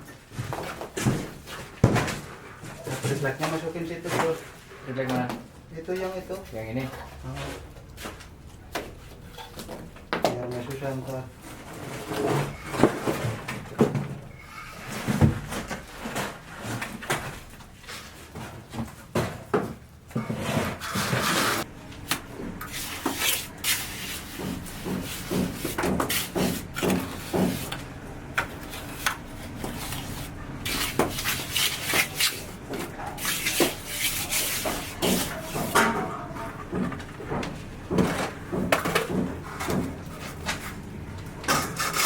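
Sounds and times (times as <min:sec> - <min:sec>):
plywood sheets knocking and scraping: 0:14.8 - 0:40.8.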